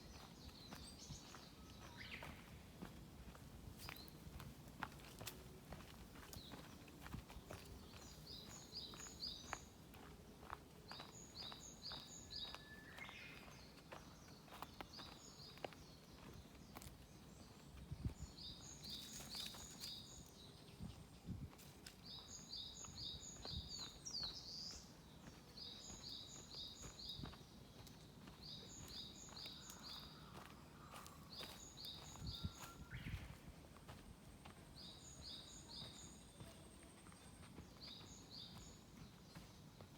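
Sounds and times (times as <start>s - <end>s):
soft footsteps on forest path: 0.0s - 39.9s.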